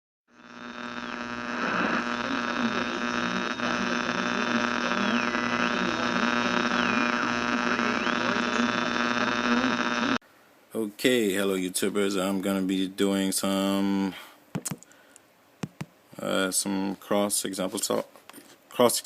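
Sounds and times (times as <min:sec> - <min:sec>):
electronic buzzing hum: 0:00.3 - 0:10.2.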